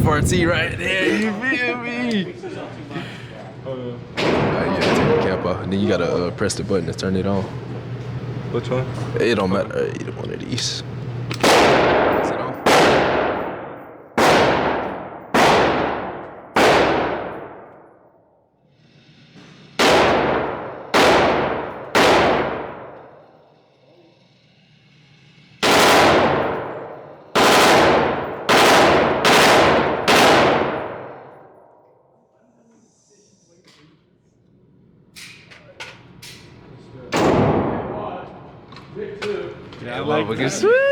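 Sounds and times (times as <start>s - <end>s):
loud sharp gunshots: 11.4s - 17.8s, 19.8s - 23.0s, 25.6s - 31.3s, 37.1s - 38.2s.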